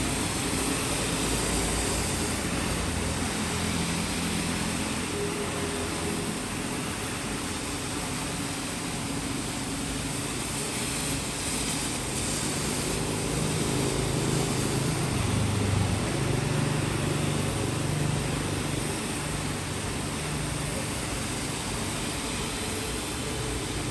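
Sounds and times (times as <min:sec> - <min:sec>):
rain hiss: 0:00.0 - 0:23.9
vehicle engines humming: 0:12.5 - 0:23.9.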